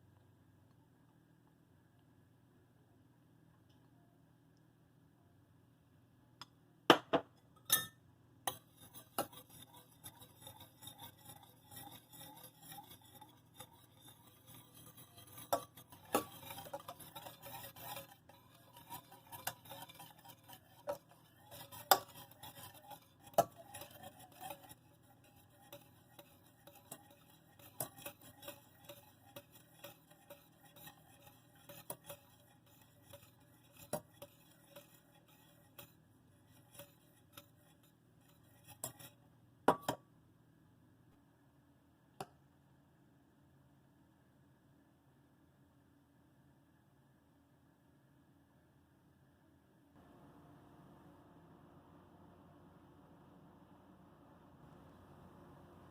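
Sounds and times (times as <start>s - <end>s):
utensil clinking against glassware: 7.7s - 8.6s.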